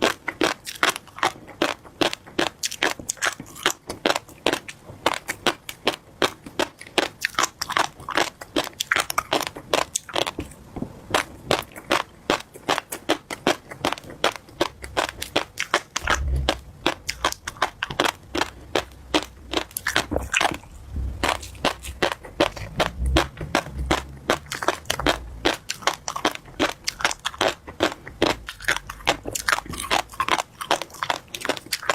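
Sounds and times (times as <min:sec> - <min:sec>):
chewing crunchy fish roe: 0:00.0 - 0:31.9
low thuds: 0:16.0 - 0:26.7.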